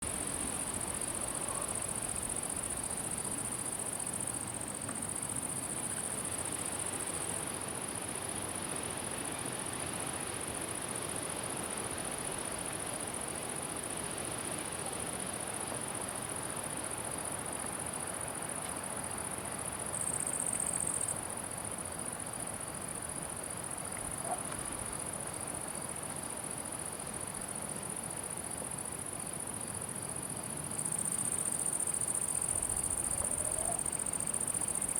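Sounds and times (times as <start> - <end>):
crickets buzzing: 0.0 - 14.4, 19.5 - 21.7, 28.4 - 34.9
faint background hiss: 0.0 - 34.9.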